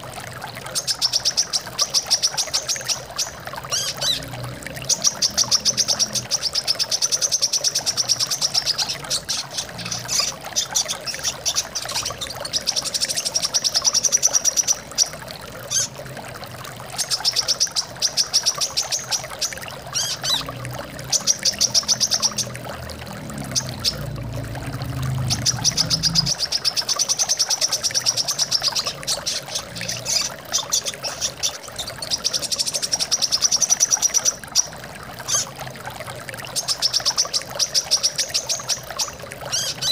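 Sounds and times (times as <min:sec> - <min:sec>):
running water: 0:00.0 - 0:39.9
bird song with rapid trills: 0:00.7 - 0:15.9, 0:16.9 - 0:22.6, 0:25.1 - 0:35.5, 0:36.4 - 0:39.9.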